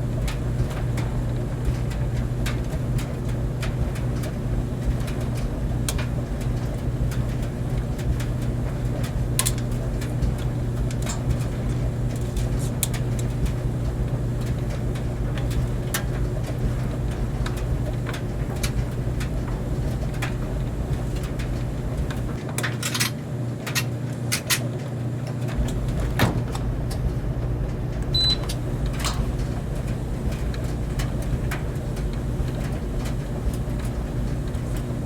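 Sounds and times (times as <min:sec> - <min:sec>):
clicks and taps in dryer: 0:00.0 - 0:35.0
clothes dryer humming: 0:00.0 - 0:35.0.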